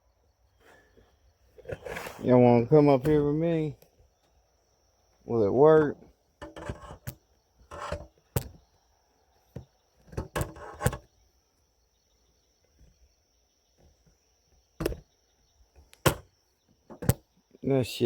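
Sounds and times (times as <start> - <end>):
short knocks and bumps: 14.8 - 15.1.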